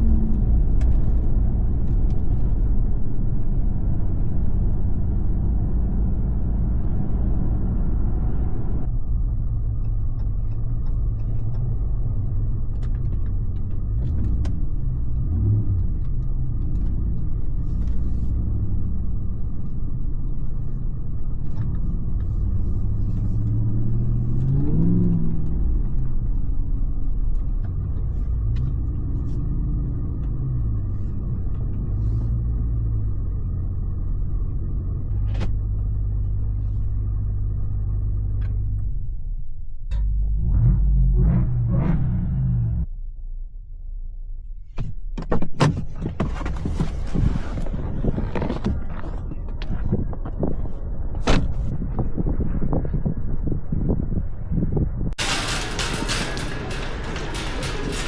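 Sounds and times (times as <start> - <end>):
truck engine deep rumble: 0.0 - 42.9, 43.6 - 58.0.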